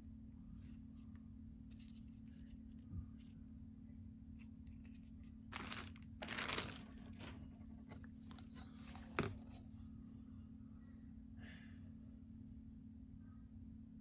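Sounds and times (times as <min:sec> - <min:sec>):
low steady hum: 0:00.0 - 0:14.0
plastic packaging crinkling and tearing: 0:05.5 - 0:07.5.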